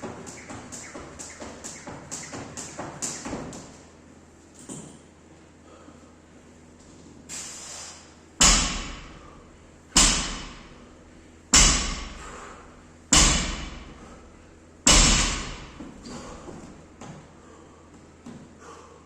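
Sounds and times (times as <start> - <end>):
gym equipment thudding on floor: 14.9 - 16.0.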